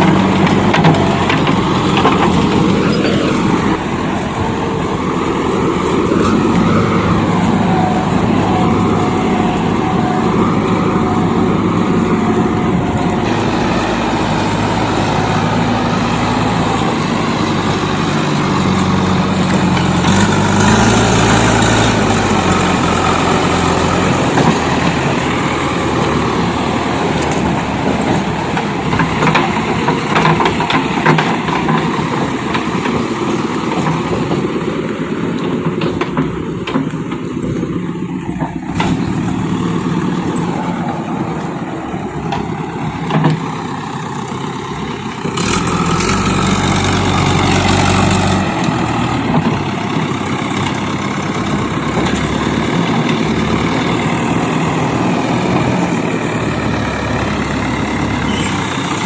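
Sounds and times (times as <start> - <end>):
clanking knocks: 0.0 - 4.0
heavy diesel engine revving: 0.0 - 59.0.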